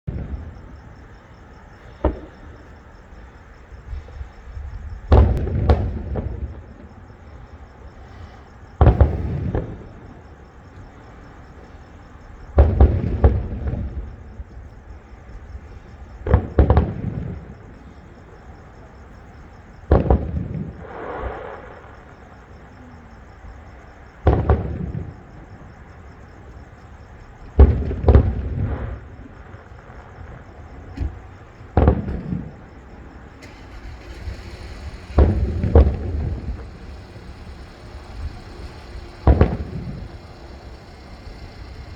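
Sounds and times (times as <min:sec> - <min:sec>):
fireworks booming with echo: 0:00.1 - 0:10.4, 0:12.4 - 0:14.4, 0:16.1 - 0:17.7, 0:19.8 - 0:22.2, 0:24.2 - 0:25.5, 0:27.4 - 0:33.4, 0:34.8 - 0:41.9.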